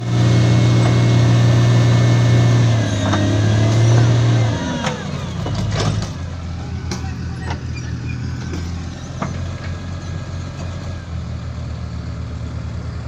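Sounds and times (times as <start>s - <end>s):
heavy diesel machinery engine: 0.0s - 13.0s
metallic knocks and squeals: 2.8s - 11.0s.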